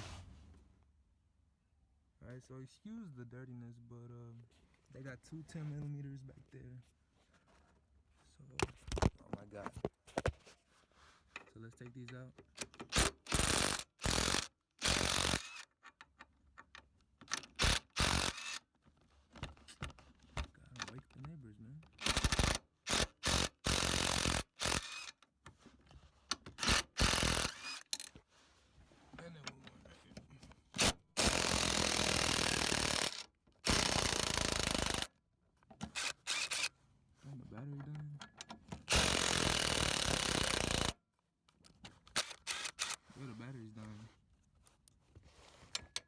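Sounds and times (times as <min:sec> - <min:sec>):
impact driver hammering bolts: 0:12.4 - 0:16.2, 0:17.2 - 0:18.6, 0:21.9 - 0:25.1, 0:26.4 - 0:28.1, 0:30.8 - 0:35.1, 0:35.8 - 0:36.7, 0:38.2 - 0:41.0
cordless impact tool hammering: 0:30.8 - 0:35.1, 0:38.9 - 0:40.9.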